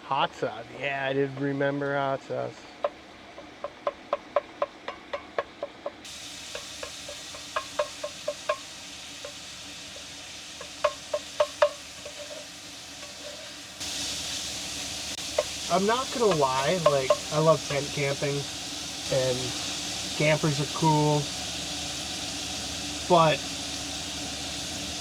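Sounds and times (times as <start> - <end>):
utensil tapping and scraping pan: 2.8 - 13.6, 15.2 - 18.3
meat sizzling in a frying pan: 2.8 - 25.0.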